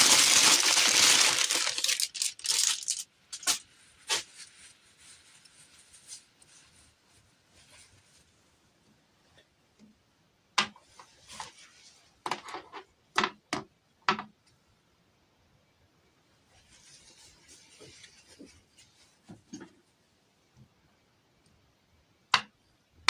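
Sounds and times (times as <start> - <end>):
packaging rustling: 0.0 - 6.3.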